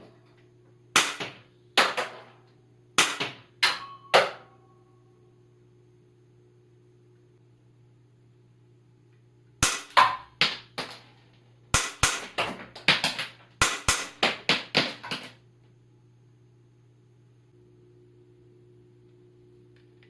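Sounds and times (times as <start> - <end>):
faint steady hum: 0.0 - 20.0
cap gun shots: 1.0 - 2.2, 3.0 - 4.4, 9.6 - 10.6.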